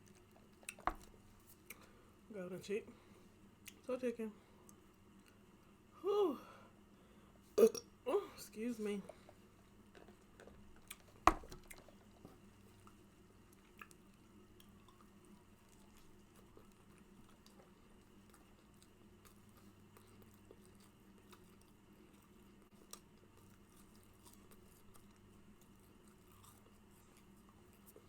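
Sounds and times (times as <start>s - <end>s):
chewing and mouth clicks: 0.0s - 1.9s, 3.6s - 3.9s, 9.1s - 28.0s
low steady hum: 0.0s - 28.0s.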